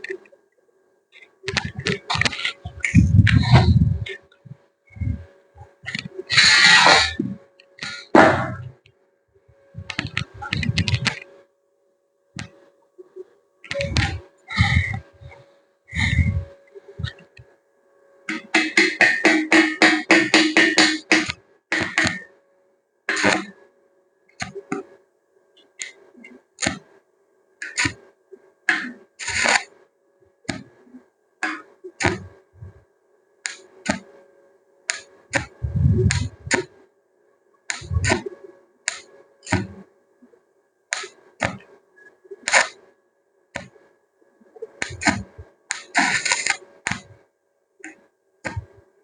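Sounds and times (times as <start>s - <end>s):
tools knocking on hard material: 18.6s - 21.3s.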